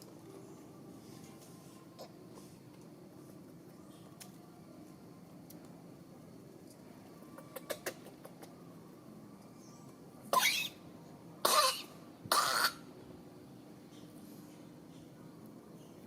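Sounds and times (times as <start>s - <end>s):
animal coughing: 11.4s - 12.8s.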